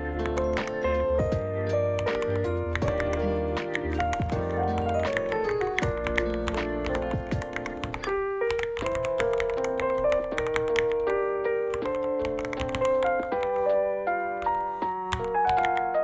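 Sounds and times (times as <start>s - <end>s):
piano-like background music: 0.0s - 16.0s
mechanical keyboard key clicks: 2.0s - 11.1s, 11.7s - 13.5s, 14.4s - 15.8s.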